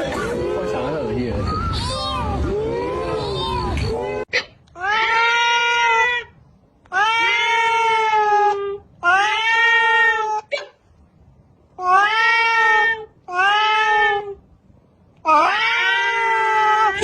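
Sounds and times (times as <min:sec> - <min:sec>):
cat meowing loudly: 0:01.4 - 0:04.2, 0:04.8 - 0:06.3, 0:06.9 - 0:10.6, 0:11.8 - 0:14.4, 0:15.2 - 0:17.0.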